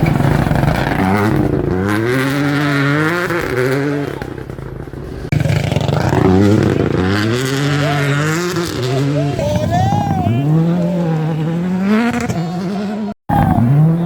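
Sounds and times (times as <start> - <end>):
rally car engine accelerating hard: 0.0 - 14.0.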